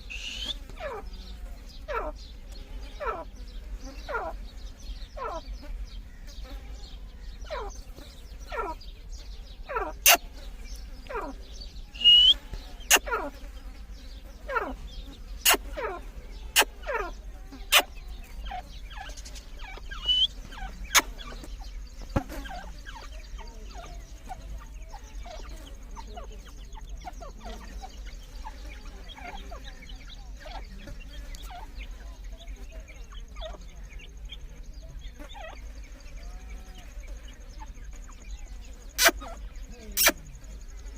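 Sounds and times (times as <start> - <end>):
partridges calling: 0.0 - 40.9.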